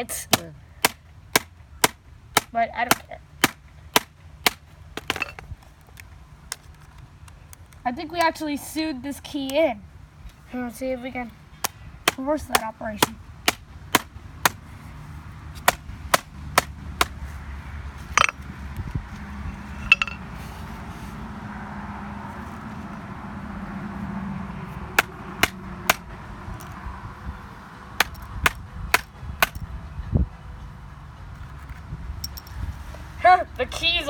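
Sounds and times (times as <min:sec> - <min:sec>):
sharp blows striking a laptop: 0:00.3 - 0:05.1, 0:11.6 - 0:14.6, 0:15.6 - 0:17.2, 0:25.0 - 0:26.1, 0:28.0 - 0:29.6.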